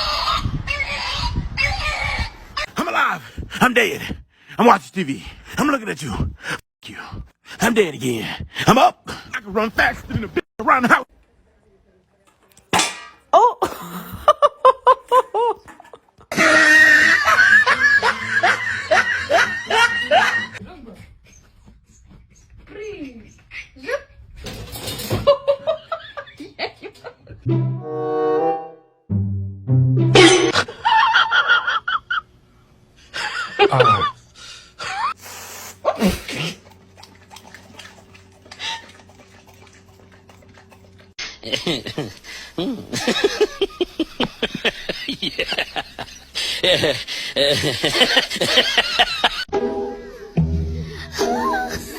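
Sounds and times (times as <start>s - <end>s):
high-pitched laughter: 13.5s - 20.6s, 33.2s - 34.2s, 50.1s - 51.9s
low bowed-string note: 27.5s - 30.2s
background music: 27.5s - 30.5s, 49.5s - 51.9s.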